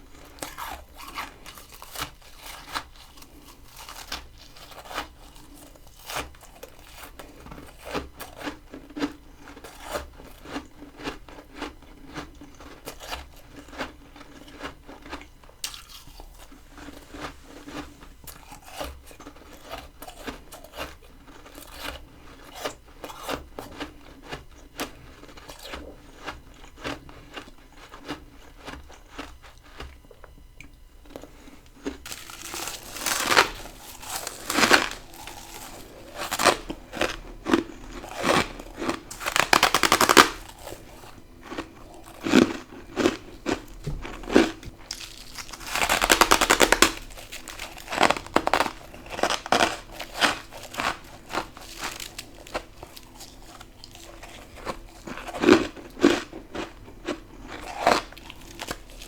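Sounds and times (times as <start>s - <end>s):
chewing crunchy frost: 0.0s - 59.0s.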